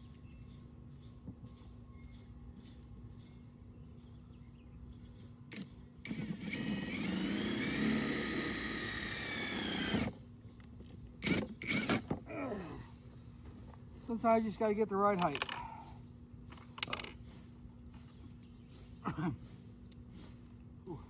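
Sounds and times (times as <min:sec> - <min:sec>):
power drill running: 0:05.6 - 0:10.2, 0:11.2 - 0:12.2.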